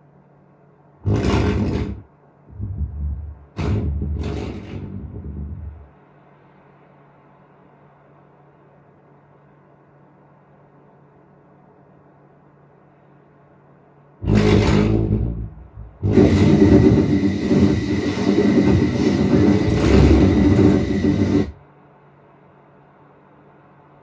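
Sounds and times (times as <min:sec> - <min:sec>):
faint steady hum: 0:00.0 - 0:24.0
rumbling film sound effects: 0:01.0 - 0:05.9, 0:14.2 - 0:21.5.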